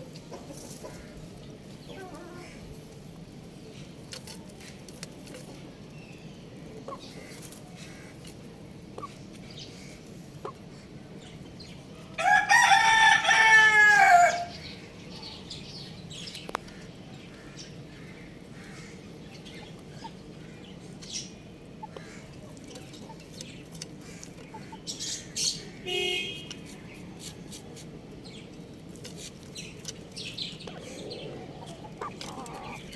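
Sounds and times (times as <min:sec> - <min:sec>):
faint chicken calls: 0:00.3 - 0:02.7, 0:12.2 - 0:15.5, 0:30.6 - 0:32.9
young rooster crowing: 0:12.2 - 0:14.6.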